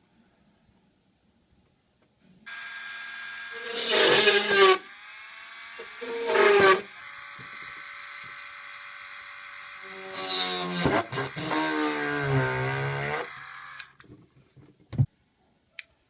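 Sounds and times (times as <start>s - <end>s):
small electric drill whining: 2.5s - 14.0s.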